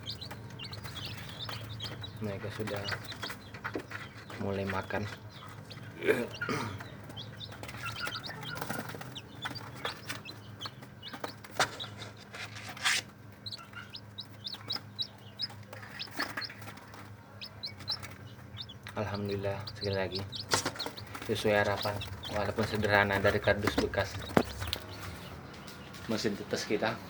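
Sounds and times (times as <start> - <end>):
chicks peeping: 0.0 - 27.0
scuffs and knocks: 20.4 - 25.3.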